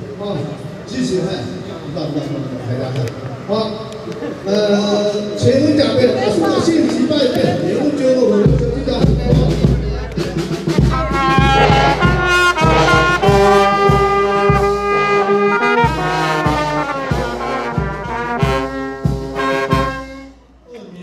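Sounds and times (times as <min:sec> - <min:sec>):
steady drum beat: 0:08.4 - 0:20.6
brass band playing melody: 0:08.4 - 0:20.7
trumpet: 0:09.0 - 0:20.7.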